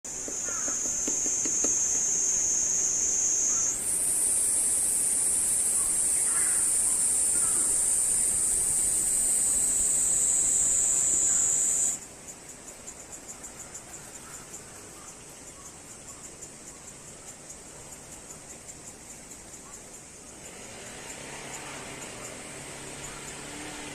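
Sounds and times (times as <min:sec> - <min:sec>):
high-pitched insect buzzing: 0:00.1 - 0:12.0
pulsing high chirp: 0:01.3 - 0:12.0.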